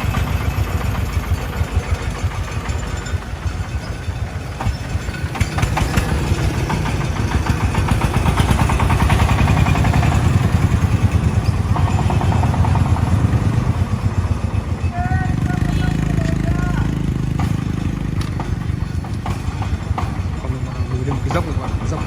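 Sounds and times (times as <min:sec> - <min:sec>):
diesel engine pulsing: 0:00.0 - 0:22.0
sharp knocks: 0:17.0 - 0:22.0.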